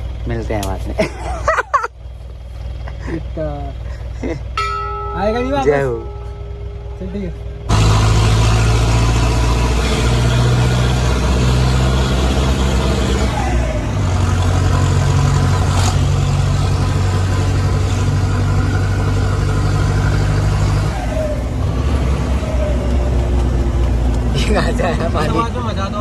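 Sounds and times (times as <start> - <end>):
loud car engine without muffler: 0.0 - 26.0.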